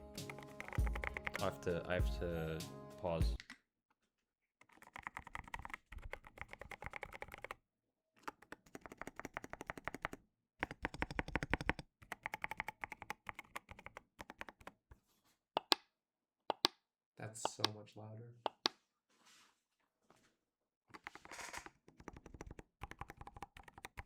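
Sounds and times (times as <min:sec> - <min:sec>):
mechanical keyboard typing: 0:00.2 - 0:01.5, 0:04.7 - 0:07.6, 0:08.2 - 0:14.8, 0:21.0 - 0:24.0.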